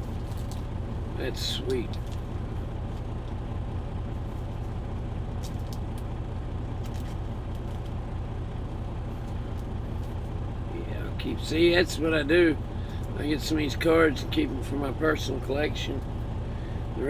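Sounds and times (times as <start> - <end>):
trading cards rustling: 0.0 - 0.7, 1.6 - 3.2, 4.2 - 6.1, 6.7 - 8.0, 9.1 - 10.3
truck engine idling: 0.0 - 17.0.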